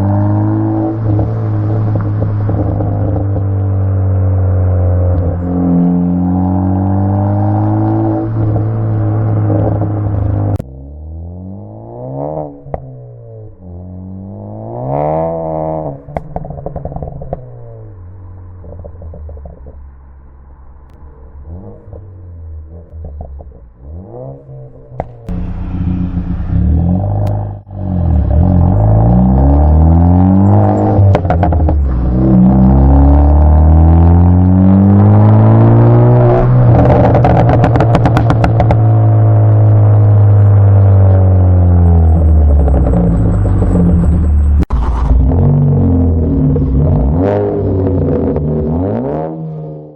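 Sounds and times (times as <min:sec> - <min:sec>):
car engine revving: 0:00.0 - 0:49.9
exhaust crackles and pops: 0:15.9 - 0:29.4, 0:30.3 - 0:32.9, 0:36.0 - 0:48.8.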